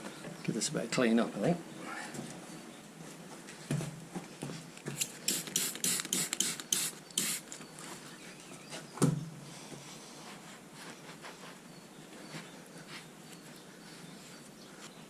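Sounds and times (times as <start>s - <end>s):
spray bottle squirting: 5.0s - 7.5s.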